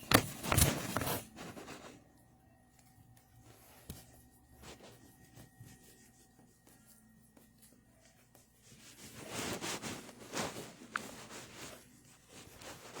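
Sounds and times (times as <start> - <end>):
faint rubbing and scraping: 3.4 - 13.0.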